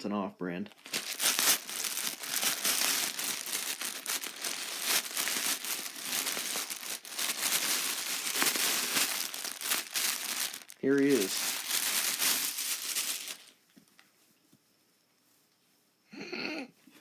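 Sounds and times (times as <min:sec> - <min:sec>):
packaging crinkling and rustling: 0:00.7 - 0:14.0.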